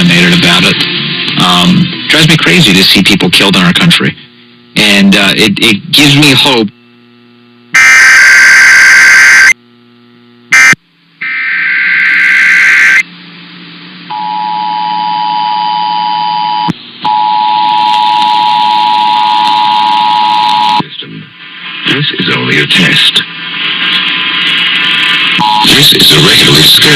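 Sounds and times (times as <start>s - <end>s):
digital data tone bursts: 7.8s - 9.6s, 10.5s - 13.1s, 25.4s - 26.9s
two-tone attention signal: 25.4s - 25.9s.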